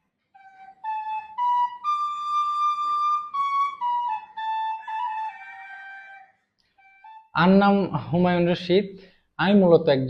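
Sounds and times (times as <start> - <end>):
tin whistle slow melody: 0.3 - 7.4.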